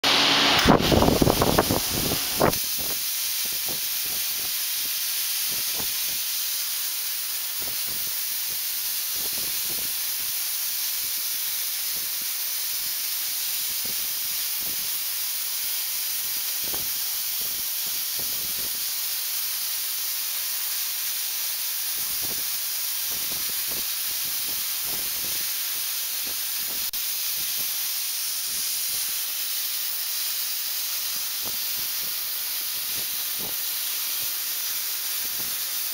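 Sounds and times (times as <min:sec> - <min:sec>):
welding arc hissing: 0:00.0 - 0:35.9.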